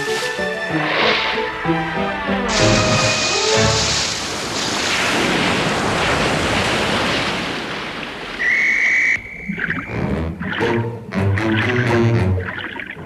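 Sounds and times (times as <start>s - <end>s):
rushing hiss: 0.0s - 6.6s.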